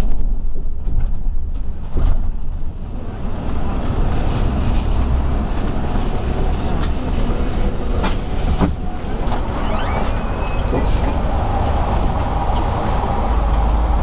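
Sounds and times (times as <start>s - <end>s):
bus engine and road rumble: 0.0s - 14.0s
brief high squeal: 9.4s - 11.2s.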